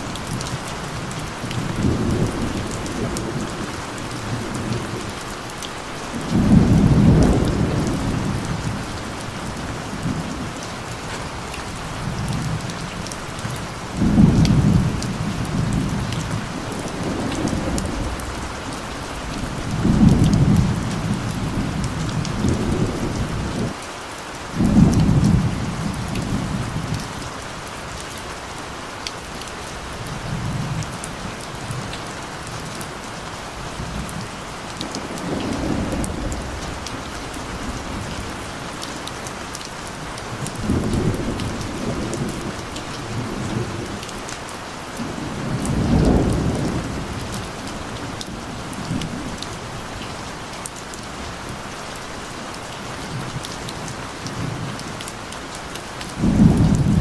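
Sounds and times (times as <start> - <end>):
rolling thunder: 0.0 - 5.2, 6.1 - 13.1, 13.8 - 23.8, 34.8 - 38.6, 40.3 - 44.0, 45.0 - 49.7, 56.2 - 57.0
steady rain hissing: 0.0 - 57.0.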